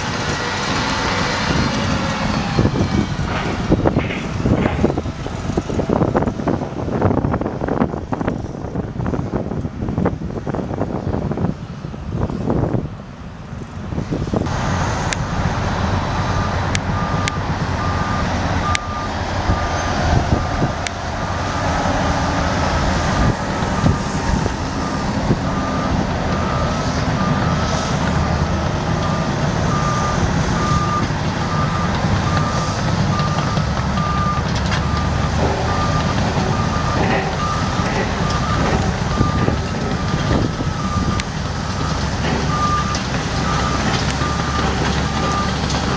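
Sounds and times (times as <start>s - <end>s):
diesel truck engine running: 0.0s - 45.9s
reversing alarm beeping: 16.3s - 20.7s, 23.1s - 28.0s, 29.0s - 45.9s.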